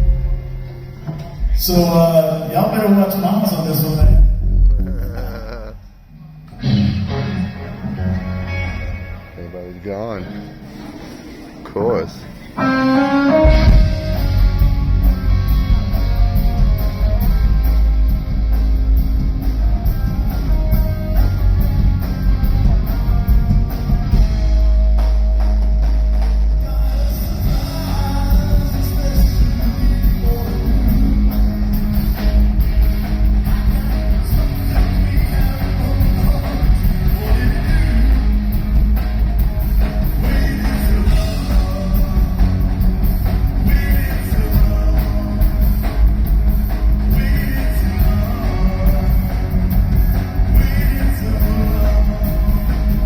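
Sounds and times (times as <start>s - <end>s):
live rock band playing: 0.0s - 4.8s, 6.4s - 53.0s
person singing: 26.5s - 32.0s, 33.0s - 38.7s, 40.0s - 53.0s.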